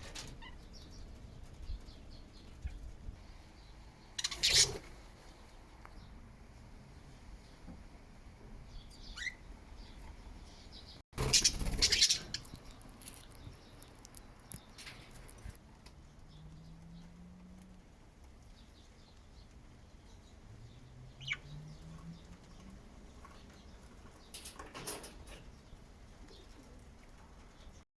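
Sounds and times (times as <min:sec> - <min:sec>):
budgies chirping: 0:04.2 - 0:04.9, 0:08.7 - 0:14.8, 0:18.5 - 0:24.2
wings flapping: 0:11.2 - 0:12.6.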